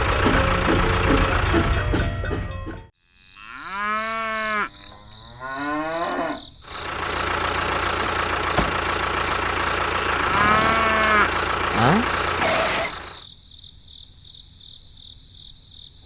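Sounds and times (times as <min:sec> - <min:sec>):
engine idling hum: 0:00.0 - 0:02.8, 0:06.8 - 0:13.2
cow mooing: 0:03.4 - 0:06.5, 0:10.2 - 0:12.9.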